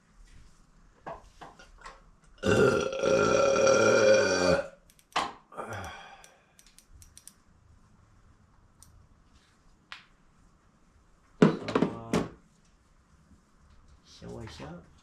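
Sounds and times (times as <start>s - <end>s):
person burping loudly: 2.4s - 4.8s, 5.6s - 6.2s
light tool clicks: 4.9s - 5.2s, 6.2s - 7.4s.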